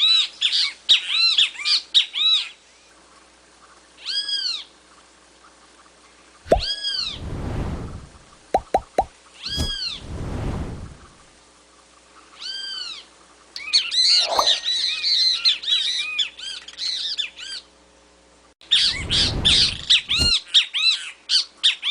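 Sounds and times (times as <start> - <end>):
low rushing noise: 6.5 - 11.3, 18.8 - 20.4
bird squawking and chirping: 13.7 - 15.6.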